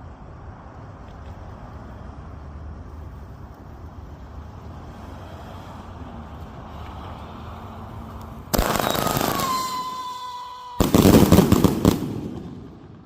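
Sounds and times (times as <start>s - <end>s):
firework crackling bangs: 8.5s - 13.0s
firework whistle: 8.6s - 12.8s
firework burst: 8.6s - 13.0s.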